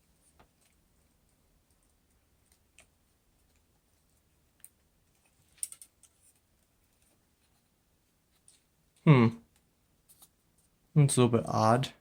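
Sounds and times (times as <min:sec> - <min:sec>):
small plastic parts clicking: 0:04.5 - 0:07.2.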